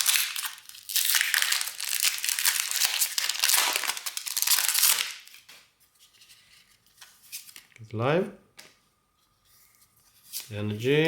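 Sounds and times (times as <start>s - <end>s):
foil wrapper crinkling: 0.0s - 5.5s.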